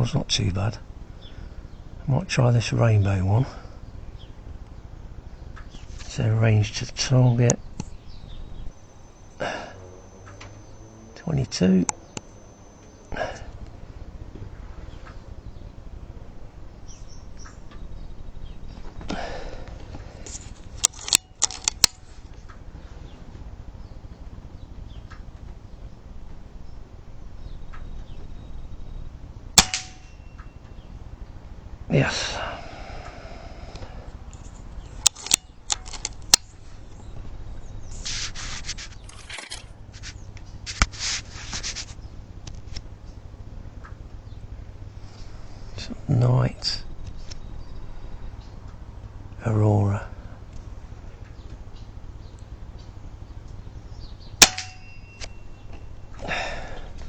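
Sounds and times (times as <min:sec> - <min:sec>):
air rifle action clicks: 0:18.9 - 0:22.6, 0:29.6 - 0:30.2, 0:33.7 - 0:37.2
brief rustle: 0:34.3 - 0:42.9.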